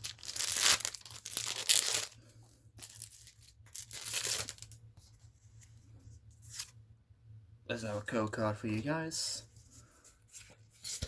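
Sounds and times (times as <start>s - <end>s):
foil wrapper rustling and tearing: 0.0s - 2.2s, 2.8s - 4.8s.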